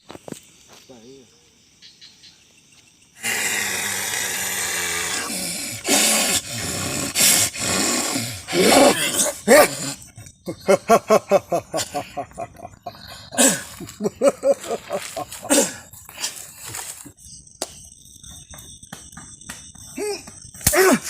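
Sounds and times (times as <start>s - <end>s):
person growling and roaring hoarsely: 3.2s - 16.0s.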